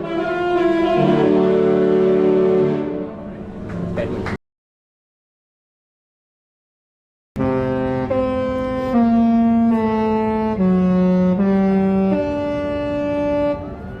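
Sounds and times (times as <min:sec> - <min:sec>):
ship horn playing a tune: 0:00.0 - 0:03.6, 0:07.4 - 0:14.0.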